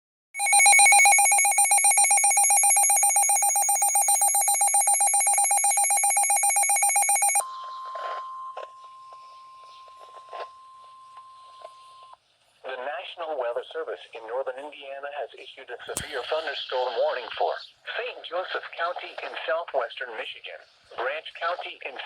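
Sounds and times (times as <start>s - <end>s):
pulsing electronic alarm beeps: 0.4s - 10.0s
steady warning tone: 0.4s - 11.6s.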